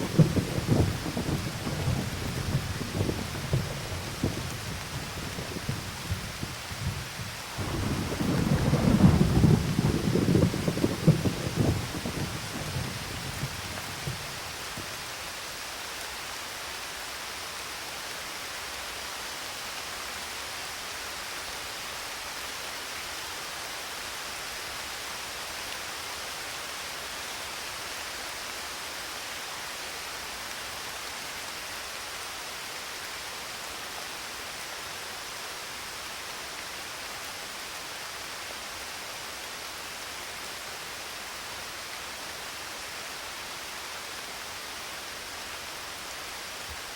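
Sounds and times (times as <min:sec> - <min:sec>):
thunder rumble: 0:00.0 - 0:14.6
rain hiss: 0:00.0 - 0:46.9.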